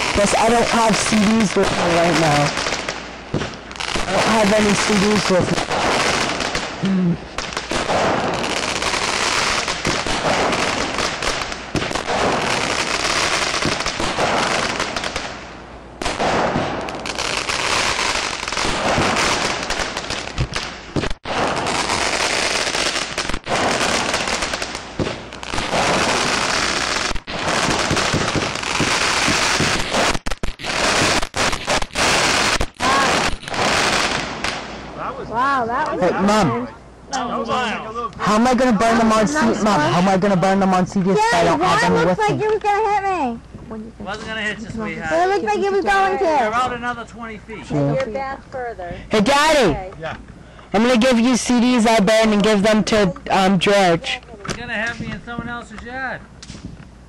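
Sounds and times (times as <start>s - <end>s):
fireworks crackling and popping: 0.0s - 35.0s, 38.2s - 57.0s.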